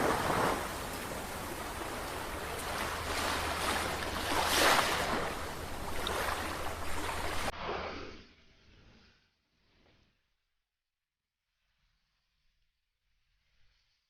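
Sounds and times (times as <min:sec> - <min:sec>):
ocean waves washing ashore: 0:00.0 - 0:07.5.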